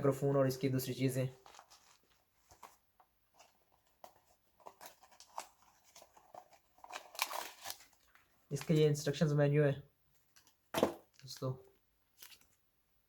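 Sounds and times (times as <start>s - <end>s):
packaging clicks and rustles: 3.4s - 8.9s.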